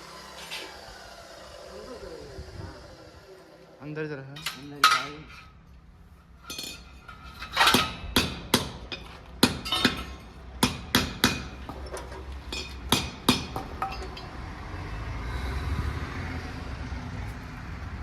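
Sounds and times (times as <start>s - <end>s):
hammer striking metal: 7.5s - 11.8s, 12.5s - 14.3s.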